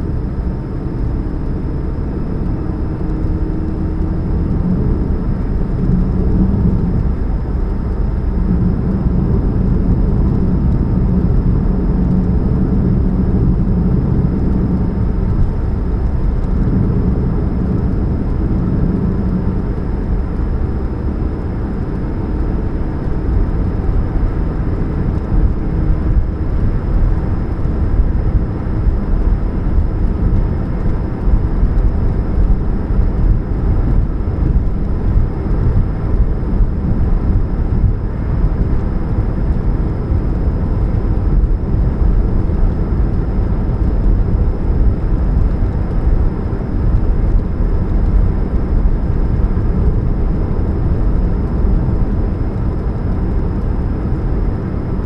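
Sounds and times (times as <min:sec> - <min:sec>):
car engine running: 0:00.0 - 0:55.0.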